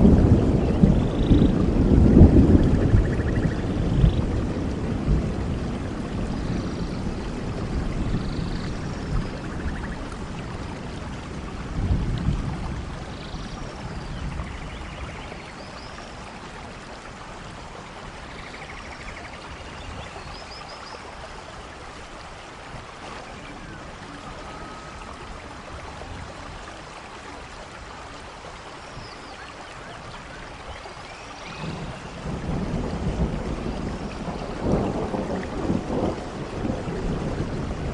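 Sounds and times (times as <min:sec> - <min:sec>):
low roll of thunder: 0:00.0 - 0:15.7, 0:31.4 - 0:37.9
rain on foliage: 0:00.0 - 0:37.9.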